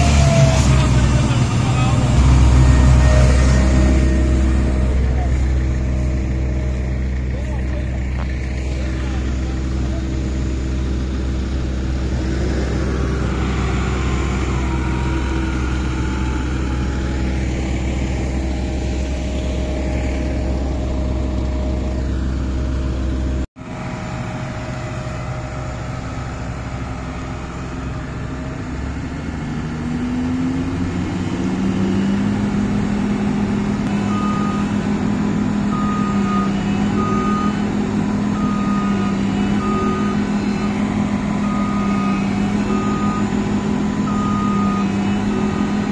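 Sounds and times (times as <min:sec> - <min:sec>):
reversing alarm beeping: 0:00.0 - 0:11.4, 0:33.9 - 0:45.9
diesel engine running: 0:00.0 - 0:45.9.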